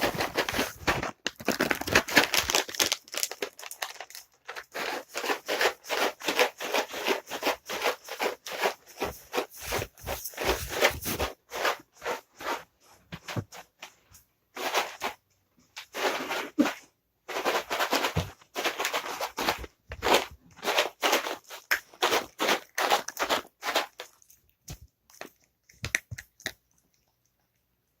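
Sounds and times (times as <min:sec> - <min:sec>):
cat treats rattling in container: 0:00.0 - 0:09.5, 0:15.8 - 0:24.5.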